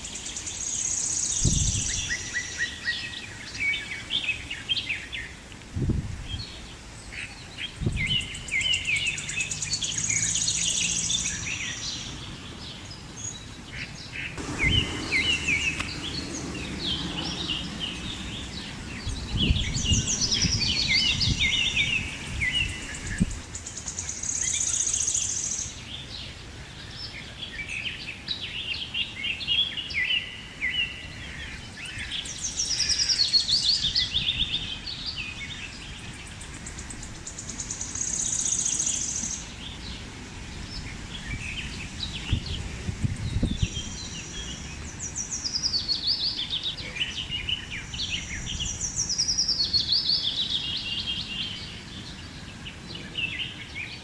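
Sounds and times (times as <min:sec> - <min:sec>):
birds chirping: 0:00.0 - 0:54.0
wind buffeting microphone: 0:01.2 - 0:04.5, 0:05.7 - 0:06.7, 0:07.6 - 0:09.4, 0:14.0 - 0:24.6, 0:31.2 - 0:37.9, 0:39.2 - 0:53.9.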